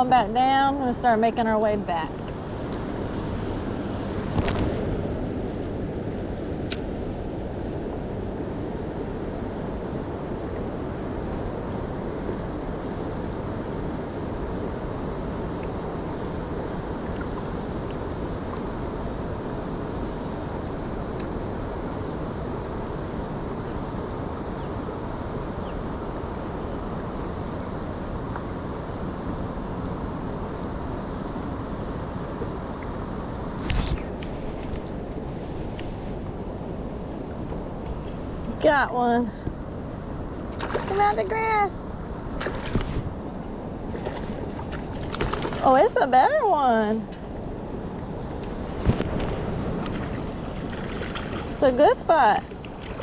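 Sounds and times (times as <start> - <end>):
faint high whine: 46.2 - 47.0.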